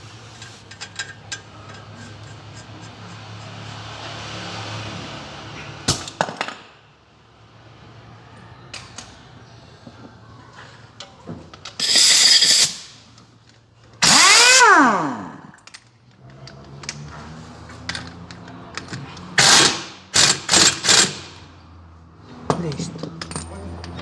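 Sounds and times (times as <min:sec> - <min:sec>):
impact wrench bursts: 0:11.8 - 0:13.0, 0:14.0 - 0:15.6, 0:19.4 - 0:21.5.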